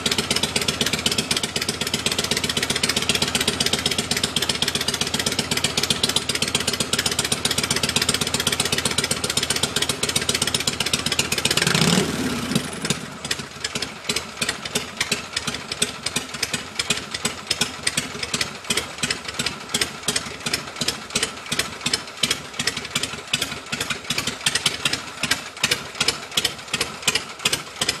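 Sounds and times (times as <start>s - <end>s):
motorcycle engine idling: 0.0s - 28.0s.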